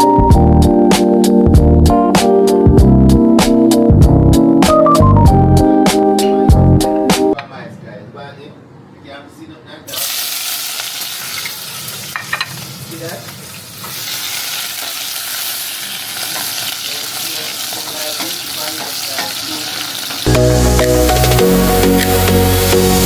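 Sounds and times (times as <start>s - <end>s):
food sizzling in a pan: 9.9s - 23.0s.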